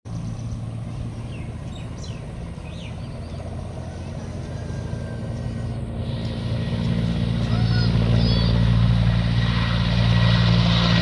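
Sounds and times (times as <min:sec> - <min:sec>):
birds chirping: 0:00.1 - 0:08.8
low engine hum: 0:00.1 - 0:11.0.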